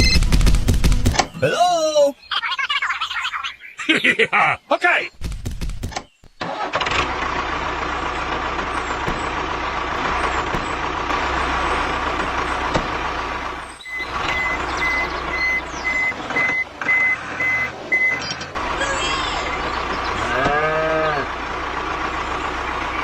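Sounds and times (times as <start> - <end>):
reversing alarm beeps: 13.8 - 18.4.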